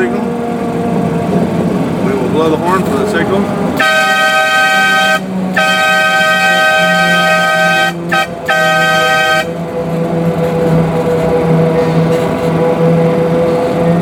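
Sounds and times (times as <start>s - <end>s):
locomotive engine humming: 0.0s - 14.0s
locomotive horn chord: 2.8s - 13.6s.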